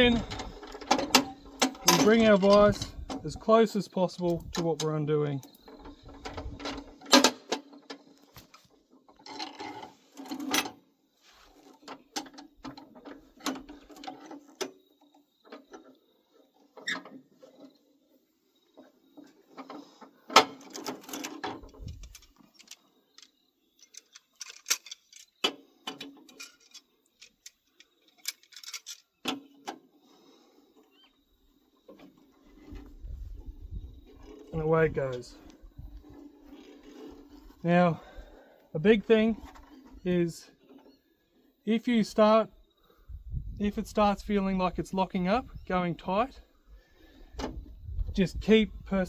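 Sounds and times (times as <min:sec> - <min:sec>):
metallic clanks of hand tools: 0:00.0 - 0:03.5.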